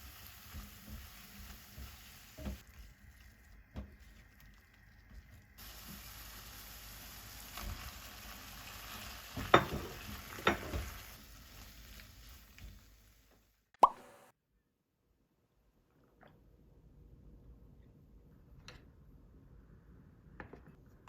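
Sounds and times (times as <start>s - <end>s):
food sizzling in a frying pan: 0.0s - 4.8s, 5.6s - 13.5s.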